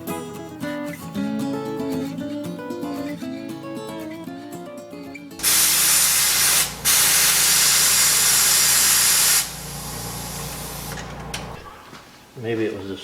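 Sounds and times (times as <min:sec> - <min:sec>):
acoustic guitar music: 0:00.0 - 0:06.9
hiss of rushing air or spray: 0:05.4 - 0:10.9.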